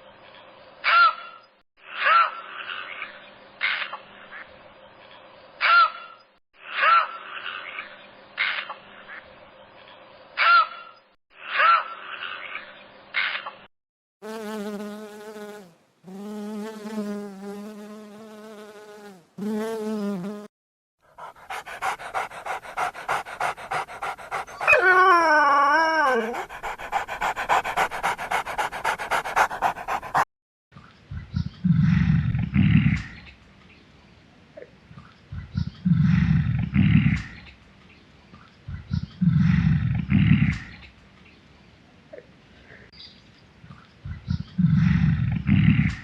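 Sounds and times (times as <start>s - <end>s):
animal whining calls: 21.1s - 30.2s.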